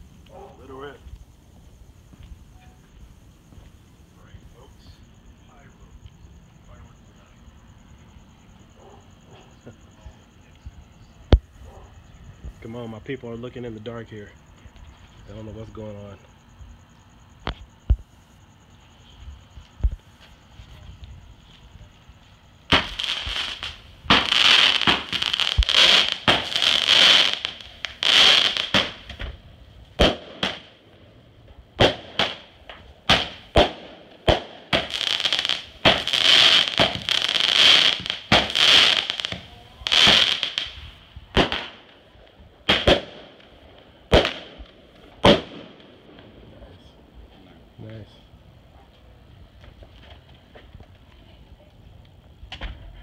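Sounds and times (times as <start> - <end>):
firework crackling: 0.0 - 5.9, 19.6 - 48.2
firework bangs: 22.6 - 46.8.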